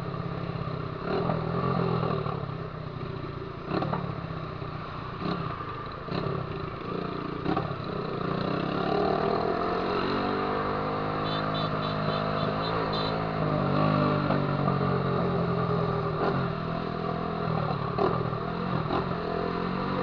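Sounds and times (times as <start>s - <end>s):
motorcycle engine revving: 5.2s - 20.0s.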